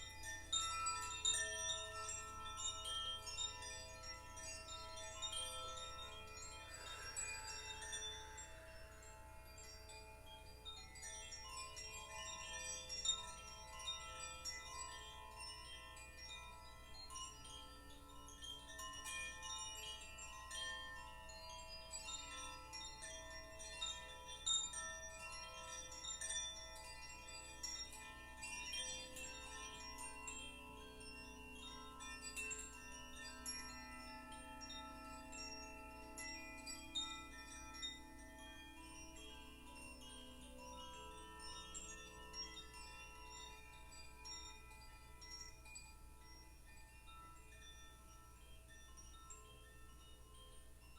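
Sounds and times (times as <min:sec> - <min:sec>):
wind chimes tinkling: 0:00.0 - 0:50.9.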